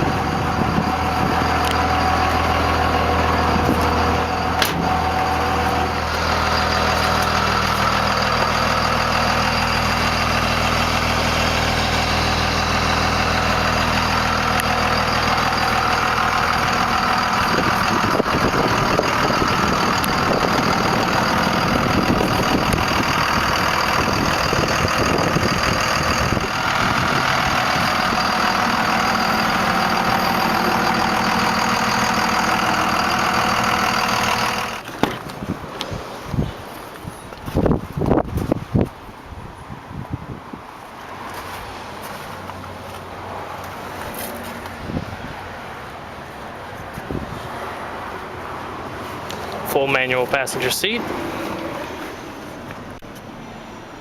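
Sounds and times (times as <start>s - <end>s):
diesel engine idling: 0.0s - 39.7s, 40.8s - 54.0s.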